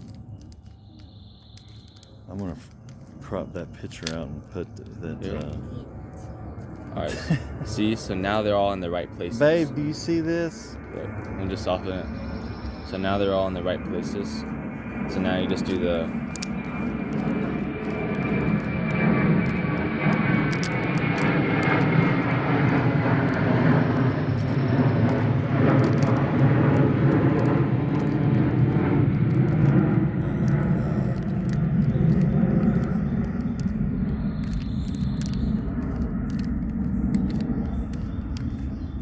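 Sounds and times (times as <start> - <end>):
puzzle cube clicking: 0.0 - 3.2, 3.8 - 5.6, 15.5 - 39.0.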